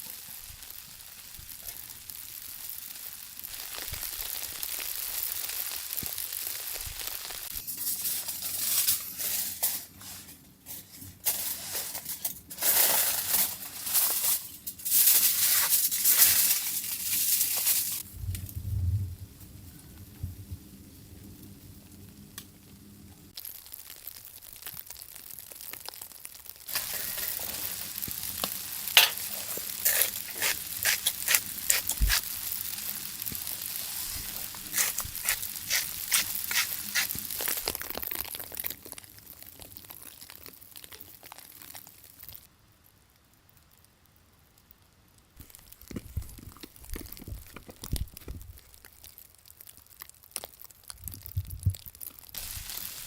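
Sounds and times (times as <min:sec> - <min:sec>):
food sizzling in a pan: 0:00.0 - 0:18.0, 0:23.3 - 0:42.5, 0:52.0 - 0:53.0.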